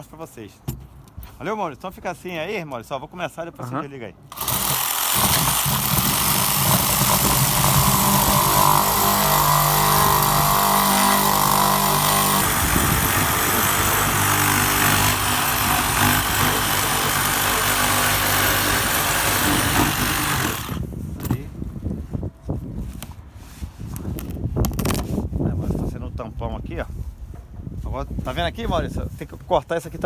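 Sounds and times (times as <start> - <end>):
power saw cutting wood: 4.3 - 20.8.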